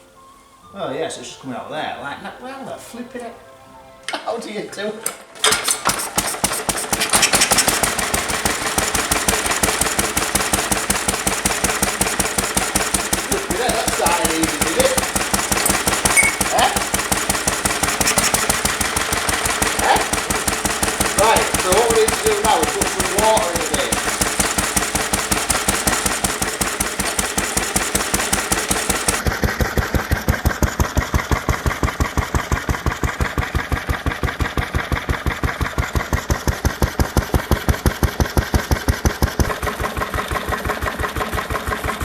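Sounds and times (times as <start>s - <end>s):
hiss: 5.4s - 29.2s
stationary engine exhaust beating: 5.4s - 42.0s.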